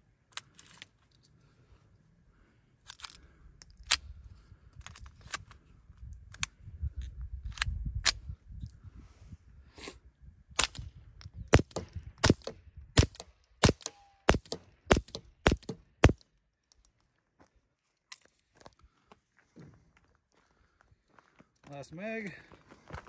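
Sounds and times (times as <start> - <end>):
suppressed pistol shots: 11.5 - 16.2.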